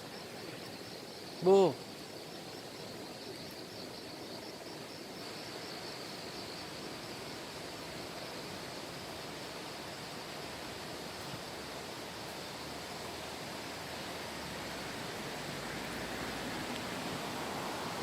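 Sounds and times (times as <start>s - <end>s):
insects trilling: 0.0s - 18.0s
stream rushing: 0.0s - 18.0s.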